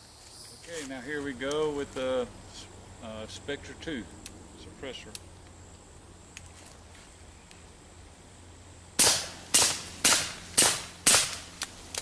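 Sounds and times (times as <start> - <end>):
suppressed pistol shots: 9.0 - 11.5.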